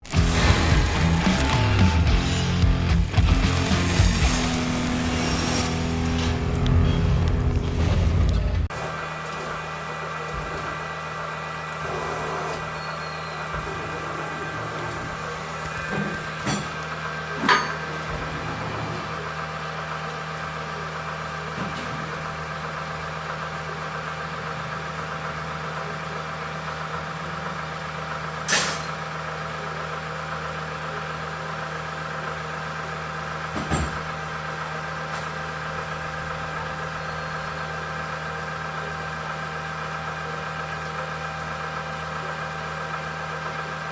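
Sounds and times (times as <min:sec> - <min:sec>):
lathe motor hum with whine: 0:08.8 - 0:28.5, 0:29.1 - 0:43.9.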